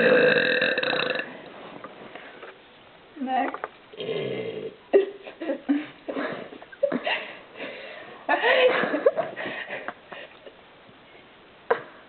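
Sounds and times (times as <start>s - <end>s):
people burping: 0.0s - 1.3s.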